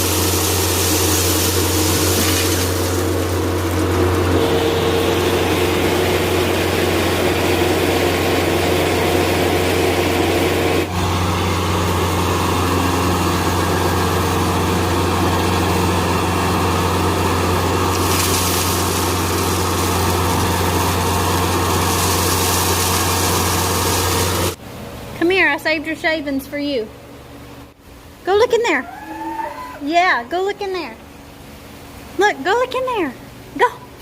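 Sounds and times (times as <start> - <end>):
engine running steadily: 0.0 - 25.2.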